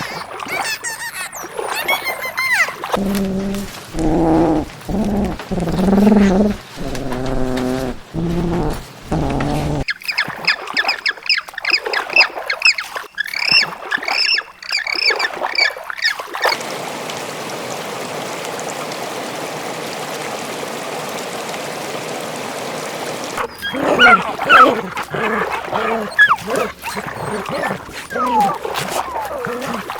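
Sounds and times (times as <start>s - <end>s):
animal calls: 0.0s - 16.6s, 23.4s - 29.9s
birds squawking: 23.4s - 29.9s.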